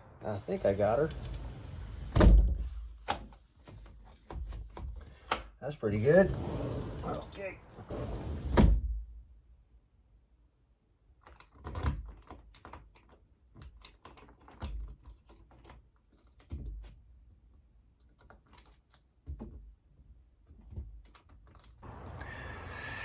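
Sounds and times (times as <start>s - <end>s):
sliding door lock clicking: 1.1s - 2.1s.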